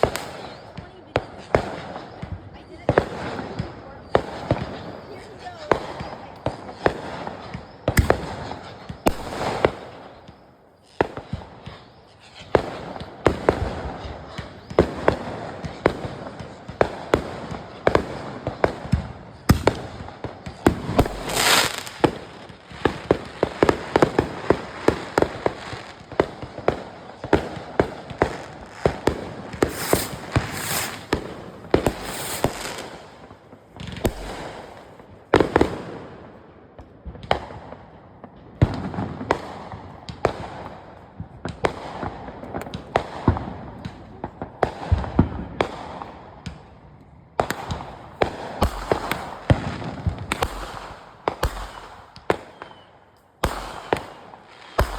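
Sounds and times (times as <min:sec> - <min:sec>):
fireworks bangs and crackling: 0:00.0 - 0:54.9
rushing hisses: 0:29.5 - 0:33.2.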